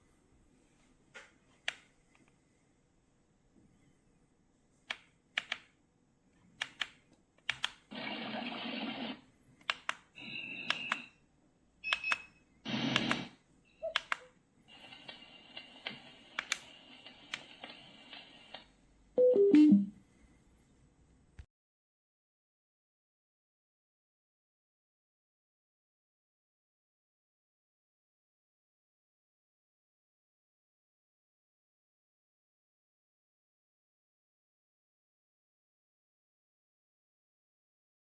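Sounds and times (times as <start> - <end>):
buttons clicking: 13.8 - 14.3, 19.2 - 19.9
high beeps: 19.2 - 19.9.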